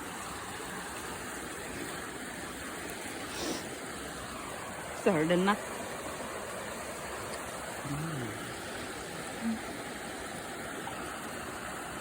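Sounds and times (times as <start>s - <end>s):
stream running over rocks: 0.0s - 12.0s
faint voice: 7.8s - 8.4s.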